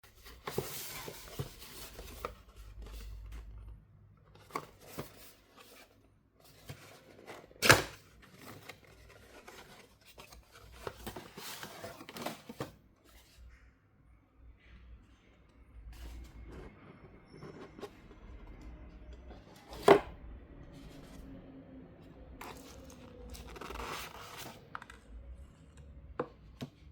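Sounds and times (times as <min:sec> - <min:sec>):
packaging rustling and scraping: 0:00.0 - 0:13.4, 0:15.9 - 0:20.1, 0:22.4 - 0:25.1.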